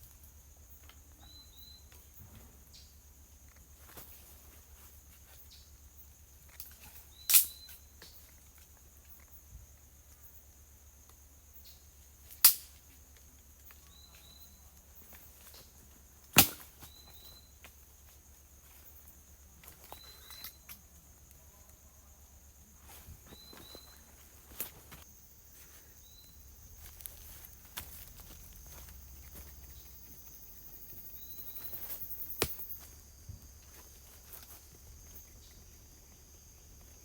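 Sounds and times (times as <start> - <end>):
insects droning: 0.0 - 37.0
sharp loud snaps: 6.6 - 7.8, 12.4 - 12.8, 16.3 - 16.9, 32.2 - 32.8.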